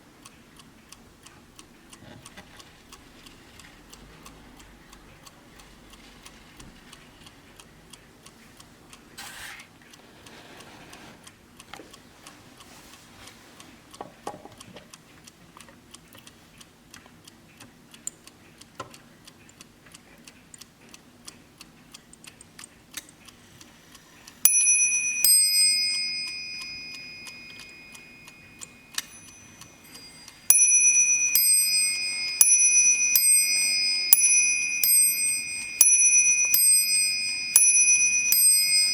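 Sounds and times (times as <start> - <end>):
mantel clock ticking: 0.0 - 38.9
clock bell striking: 24.5 - 38.9
clock chiming two bells: 24.5 - 38.9.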